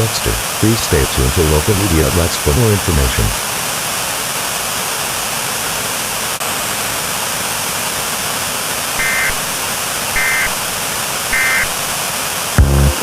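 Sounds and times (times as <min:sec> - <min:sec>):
static hiss: 0:00.0 - 0:13.0
two-tone warbling data tones: 0:09.0 - 0:09.6, 0:10.2 - 0:10.7, 0:11.3 - 0:11.8.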